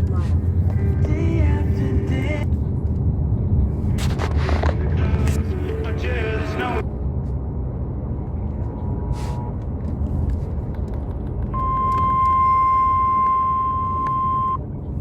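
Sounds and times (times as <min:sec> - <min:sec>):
road rumble inside car: 0:00.0 - 0:15.0.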